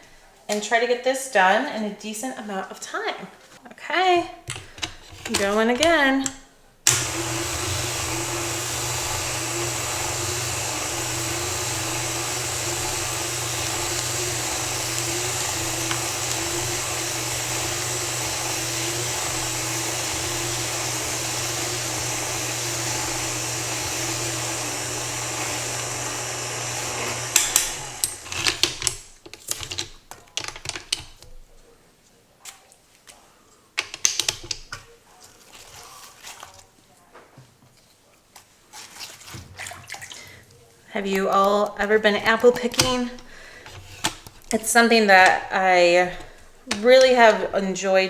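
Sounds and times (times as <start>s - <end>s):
stand mixer motor running: 6.9s - 29.0s
clicks and knocks of handling: 27.4s - 31.4s, 33.8s - 34.9s.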